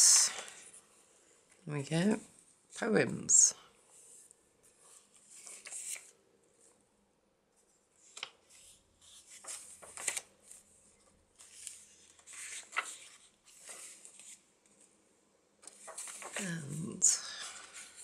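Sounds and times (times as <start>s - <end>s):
paper rustling and crinkling: 4.0s - 6.7s, 8.0s - 14.9s, 15.6s - 18.0s.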